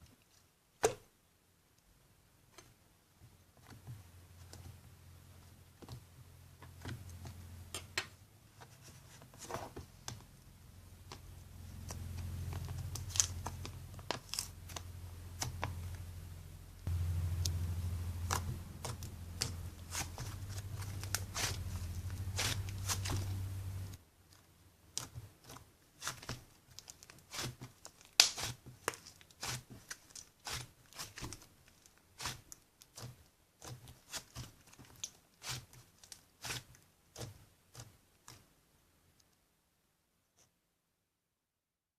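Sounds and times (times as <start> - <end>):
low steady hum: 4.0 - 24.1
slime squishing with sticky pops: 11.0 - 16.0, 16.9 - 38.4.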